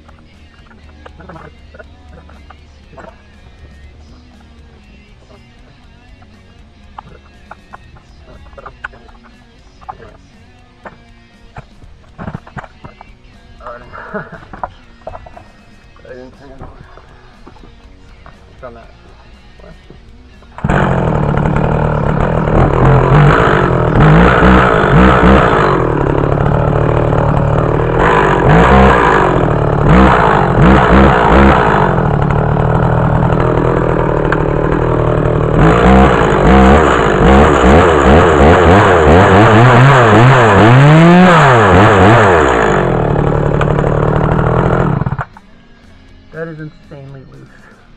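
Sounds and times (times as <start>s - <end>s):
chainsaw engine revving: 20.5s - 45.4s.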